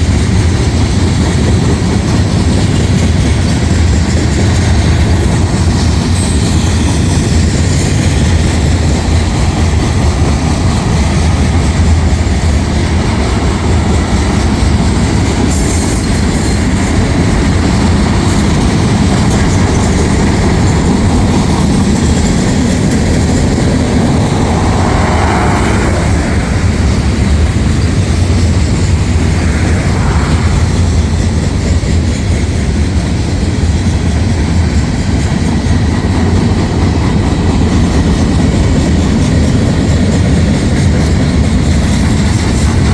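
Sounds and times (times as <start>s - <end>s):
train wheels rumbling on rail: 0.0s - 42.9s
high wheel squeal: 15.4s - 18.5s.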